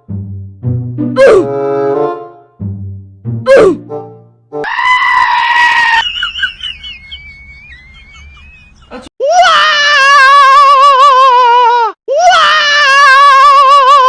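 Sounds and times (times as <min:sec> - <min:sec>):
swooping cry effect: 0:01.1 - 0:01.5.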